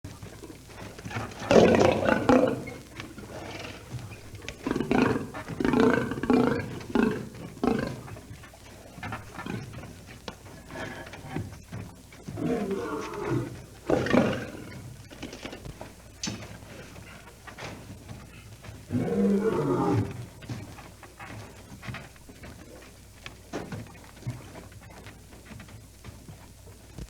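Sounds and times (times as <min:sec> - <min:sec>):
lion grunting calls: 0:00.1 - 0:11.6, 0:12.2 - 0:15.6, 0:18.4 - 0:21.5
lion roaring: 0:00.2 - 0:11.4, 0:12.2 - 0:15.5, 0:18.8 - 0:20.8.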